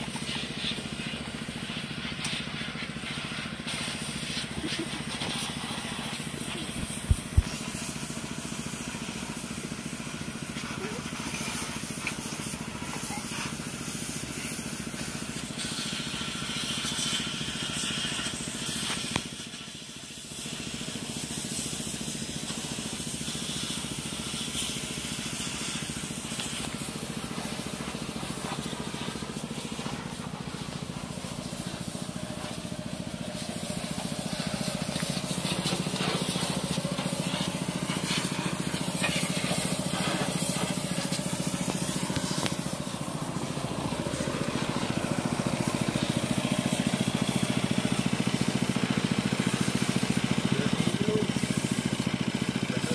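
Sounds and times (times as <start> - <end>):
water spraying with hiss: 0.0 - 52.9
engine humming: 25.8 - 52.0.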